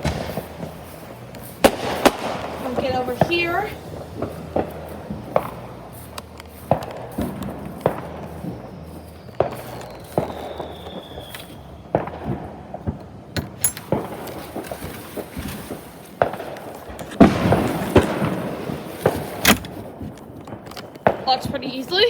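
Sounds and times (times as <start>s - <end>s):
falling firework whistle: 0.0s - 13.3s
fireworks popping and banging: 0.0s - 22.0s.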